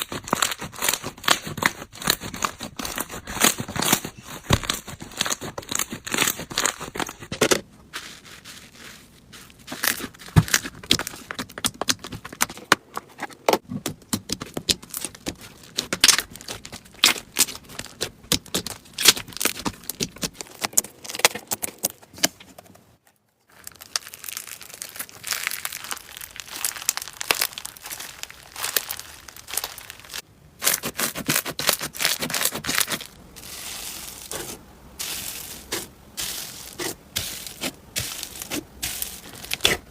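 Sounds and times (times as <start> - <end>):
slime crackling and popping: 0.0 - 7.3, 9.5 - 12.6, 14.1 - 21.9, 23.6 - 34.4, 35.0 - 39.9.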